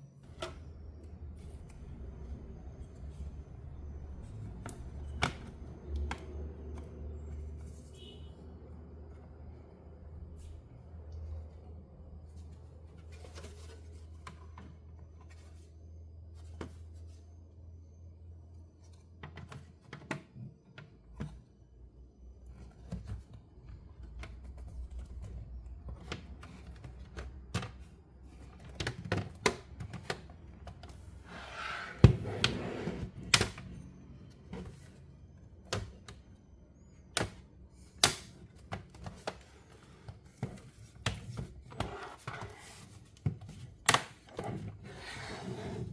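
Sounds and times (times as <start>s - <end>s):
clicks and taps of laptop parts: 4.6s - 6.8s, 37.1s - 39.5s.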